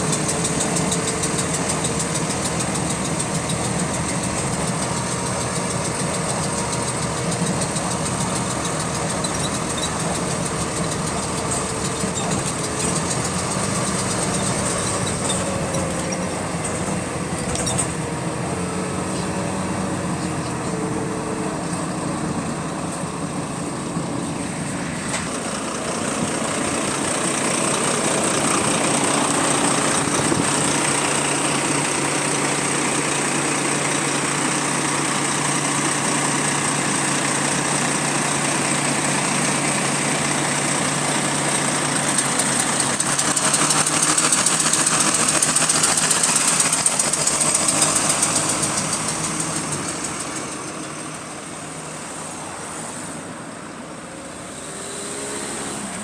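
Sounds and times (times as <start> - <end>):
bus diesel engine running: 0.0 - 56.0
repetitive clicking: 42.2 - 51.0.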